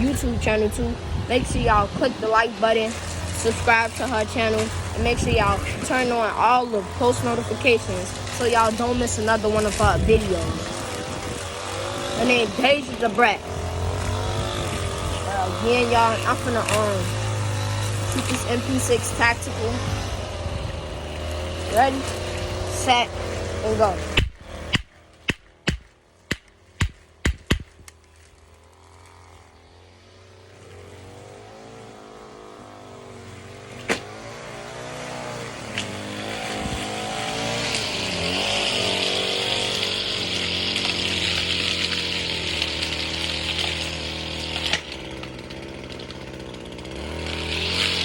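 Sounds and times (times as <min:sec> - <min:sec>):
lawn mower engine running: 0:00.0 - 0:48.0
gunshots: 0:24.2 - 0:27.7.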